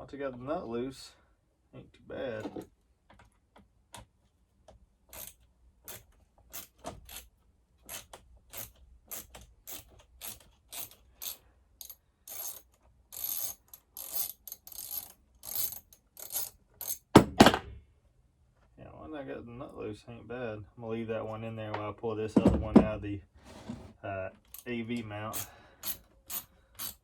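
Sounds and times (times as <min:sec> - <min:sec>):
ratchet wrench clicking: 0:08.5 - 0:17.0, 0:25.4 - 0:27.0.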